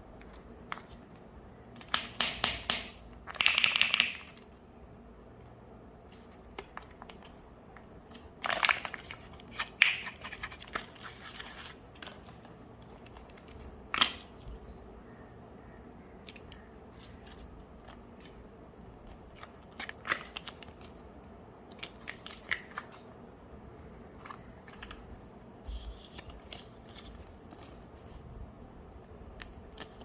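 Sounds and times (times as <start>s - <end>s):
plastic wrapper crinkling and tearing: 8.1s - 14.3s, 21.7s - 23.0s.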